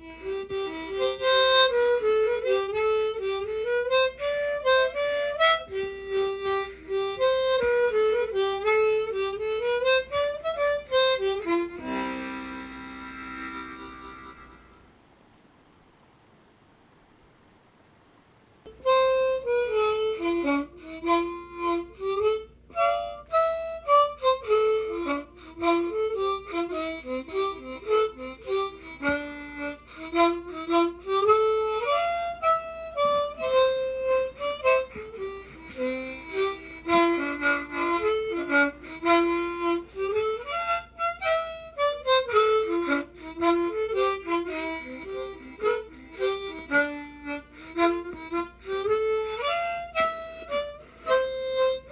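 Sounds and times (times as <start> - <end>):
harmonica playing dance tune: 0.0 - 15.0, 18.7 - 51.9.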